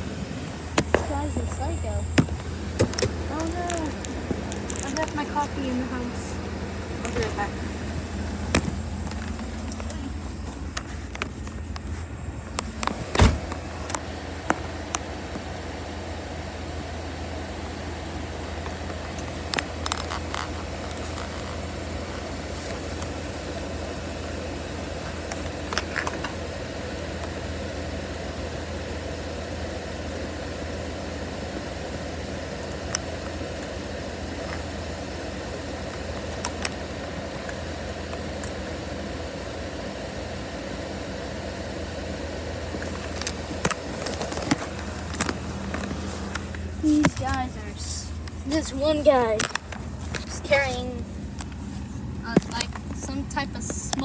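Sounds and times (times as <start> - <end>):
low mechanical hum: 0.0 - 54.0.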